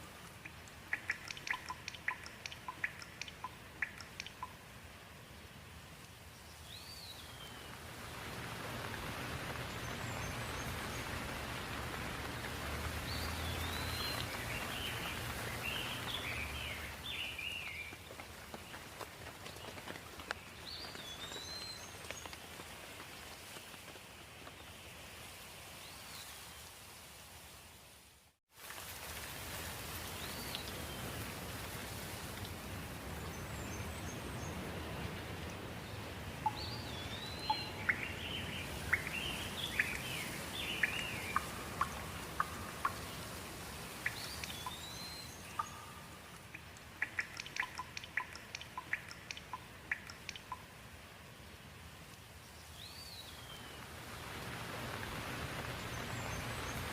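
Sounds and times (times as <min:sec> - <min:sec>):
quick sharp drips: 0:00.0 - 0:04.8, 0:36.4 - 0:50.9
steady rain: 0:00.0 - 0:56.9
birds chirping: 0:00.2 - 0:04.7, 0:06.5 - 0:22.4, 0:33.1 - 0:50.7.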